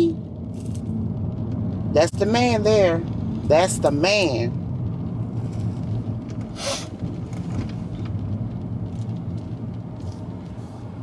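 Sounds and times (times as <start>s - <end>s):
car engine and road hum: 0.0s - 11.0s
brief hiss: 6.6s - 7.0s.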